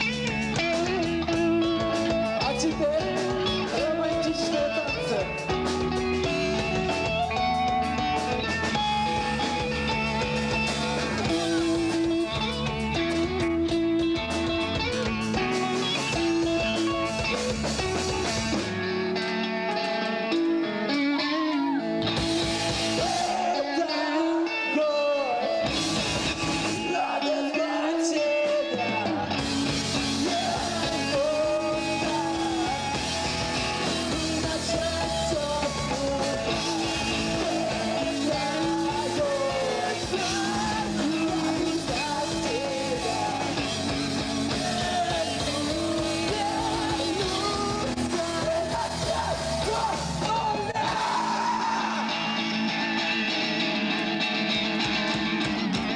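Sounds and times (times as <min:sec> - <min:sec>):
person singing: 0:00.0 - 0:13.2, 0:22.8 - 0:25.8, 0:26.6 - 0:52.6
bass guitar: 0:00.0 - 0:55.9
drums: 0:00.0 - 0:55.9
electric guitars: 0:00.0 - 0:55.9.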